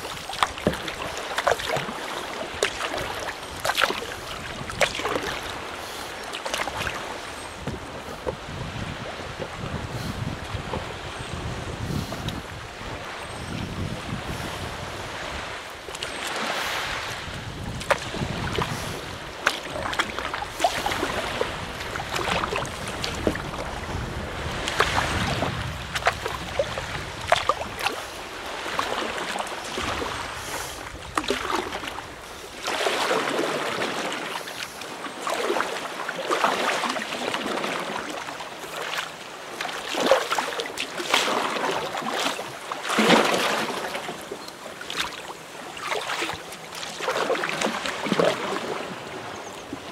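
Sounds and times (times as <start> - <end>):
water slapping a hull: 0.0 - 49.9
water splashing around a kayak: 0.0 - 49.9
wind buffeting microphone: 3.0 - 5.7, 6.7 - 15.7, 16.4 - 28.7.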